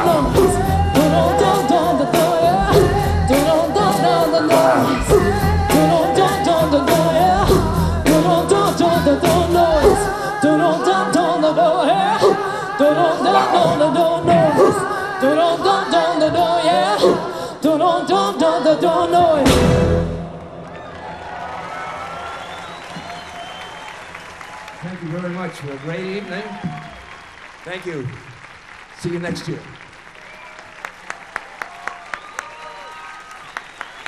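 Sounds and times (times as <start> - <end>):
bass guitar: 0.0 - 10.4, 19.2 - 20.4
drums: 0.0 - 10.6, 18.9 - 25.1, 26.0 - 28.5
people singing: 0.0 - 20.2.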